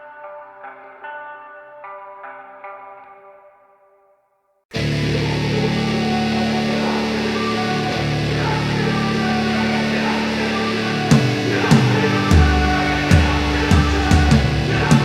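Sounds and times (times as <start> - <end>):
rock music: 4.8 - 15.0
drum hits: 11.1 - 15.0.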